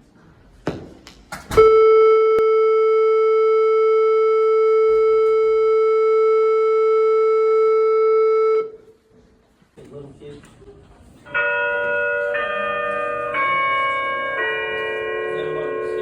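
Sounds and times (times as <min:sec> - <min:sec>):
school bell steady tone: 0:02.4 - 0:08.8, 0:11.3 - 0:16.0.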